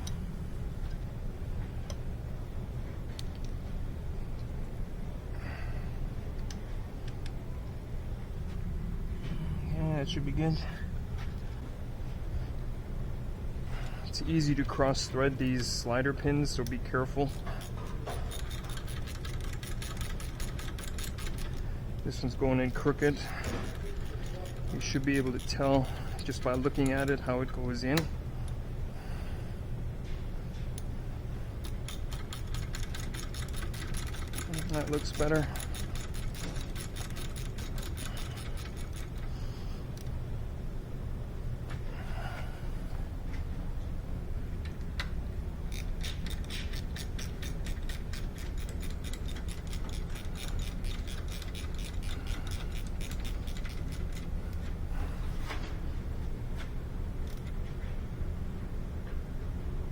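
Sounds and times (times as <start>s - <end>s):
steady low hum: 0.0s - 59.9s
ratchet wrench clicking: 16.6s - 21.6s, 22.9s - 27.3s, 31.6s - 39.3s, 45.7s - 54.6s.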